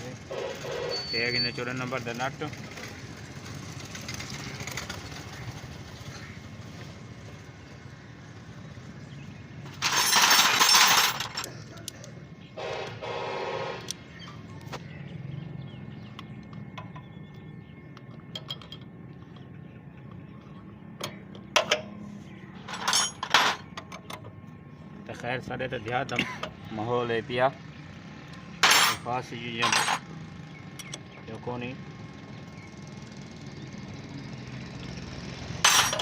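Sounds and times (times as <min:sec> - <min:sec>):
metal tools clinking and rattling: 0:09.6 - 0:12.2, 0:18.0 - 0:22.0, 0:22.6 - 0:24.4, 0:28.6 - 0:30.1, 0:30.7 - 0:31.1, 0:35.6 - 0:36.0.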